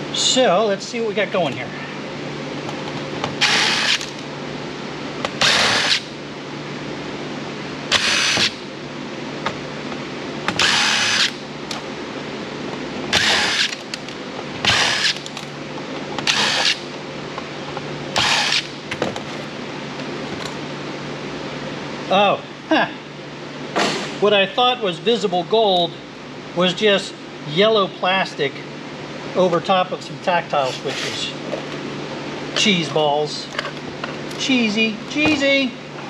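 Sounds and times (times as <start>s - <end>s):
cordless power driver spinning: 3.4s - 4.2s, 5.4s - 6.0s, 7.9s - 8.5s, 10.6s - 11.4s, 13.1s - 15.5s, 16.2s - 16.8s, 18.2s - 18.7s.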